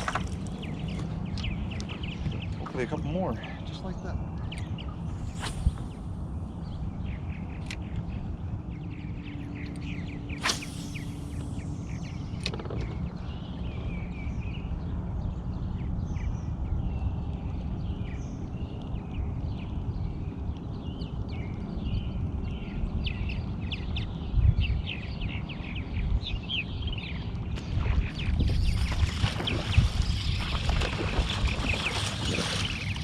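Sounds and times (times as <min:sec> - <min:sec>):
steady low rumble: 0:00.0 - 0:33.0
songbirds chirping and singing: 0:17.8 - 0:33.0.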